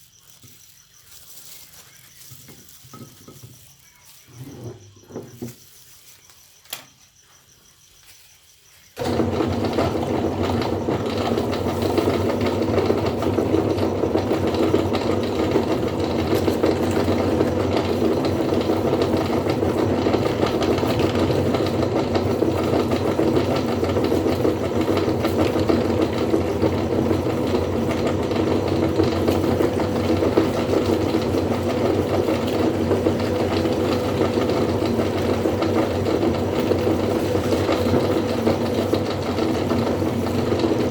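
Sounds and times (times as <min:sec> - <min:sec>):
meat grinder motor humming: 0:09.0 - 0:40.9.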